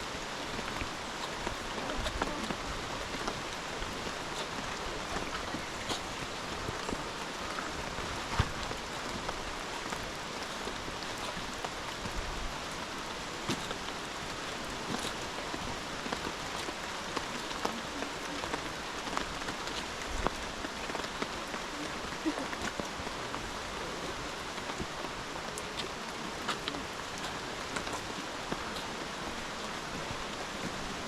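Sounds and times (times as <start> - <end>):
raindrops ticking: 0.0 - 31.0
steady rain hiss: 0.0 - 31.0.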